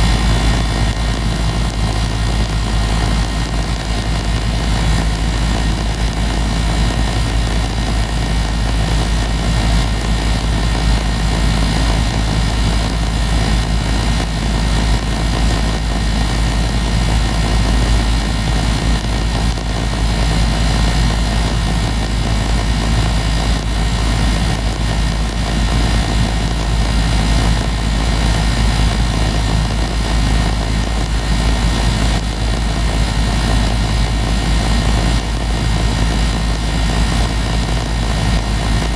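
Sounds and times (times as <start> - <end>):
compressor hum: 0.0 - 38.9
condenser fan rushing air: 0.0 - 38.9.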